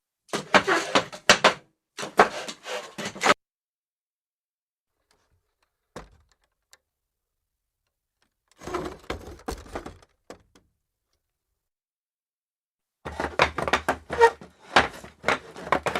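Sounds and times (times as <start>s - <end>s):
chair creaking scrape: 2.0s - 3.4s, 8.6s - 9.8s.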